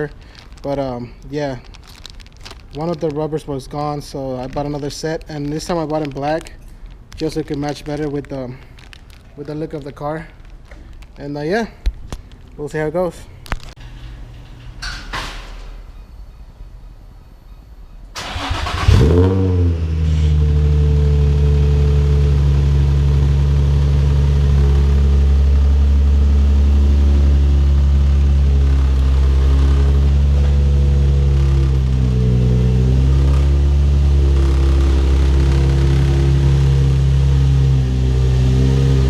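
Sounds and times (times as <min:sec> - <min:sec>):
car engine starting and idling: 0:18.1 - 0:39.0.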